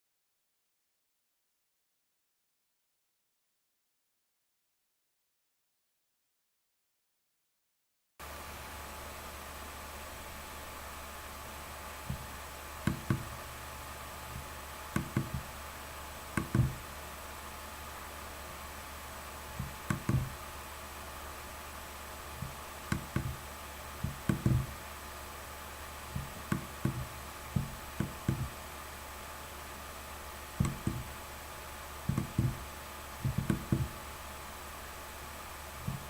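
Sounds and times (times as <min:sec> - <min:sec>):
steady electrical hum: 0:08.2 - 0:36.0
soft knocks and thumps: 0:12.1 - 0:12.3, 0:12.9 - 0:13.5, 0:14.3 - 0:15.5, 0:16.4 - 0:16.8, 0:19.6 - 0:20.4, 0:22.4 - 0:23.4, 0:24.0 - 0:24.8, 0:26.1 - 0:28.6, 0:30.6 - 0:31.2, 0:32.1 - 0:34.0.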